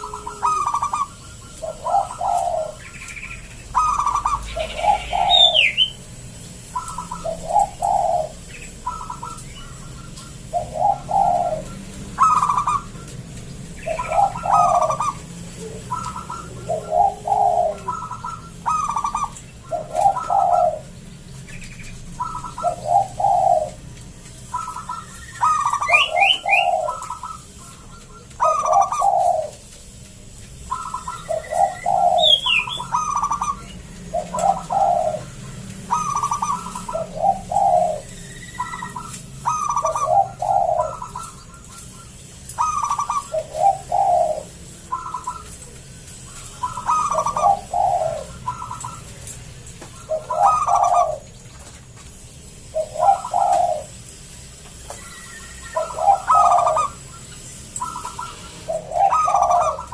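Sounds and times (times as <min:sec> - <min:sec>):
dove cooing: 0:00.0 - 0:59.9
small birds chirping: 0:00.0 - 0:59.9.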